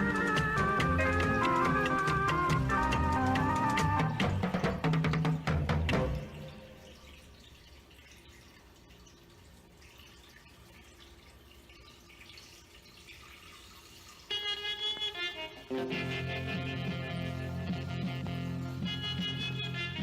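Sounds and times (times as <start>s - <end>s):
background music: 0.0s - 7.0s, 14.3s - 20.0s.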